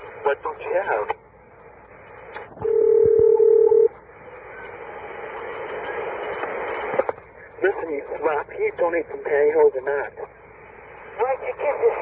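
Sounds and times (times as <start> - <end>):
loud steady telephone tone: 2.6 - 4.8.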